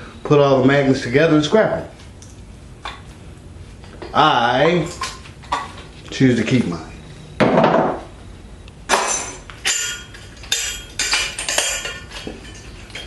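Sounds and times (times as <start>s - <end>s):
sharp metallic clinks and knocks: 8.9s - 13.0s.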